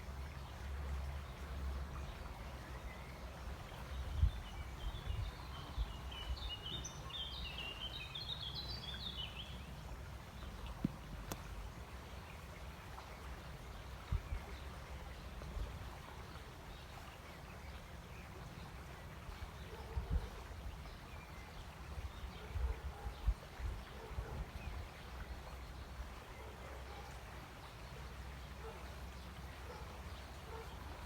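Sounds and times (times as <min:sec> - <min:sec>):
soft low thumps: 0:10.8 - 0:11.5.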